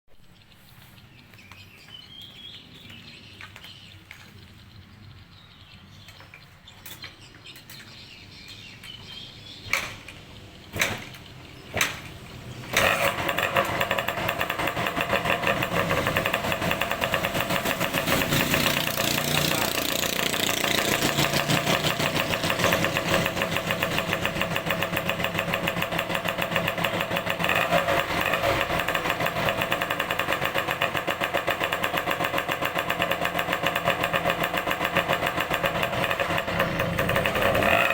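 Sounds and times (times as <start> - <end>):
two-stroke engine starting and running: 9.2 - 37.9.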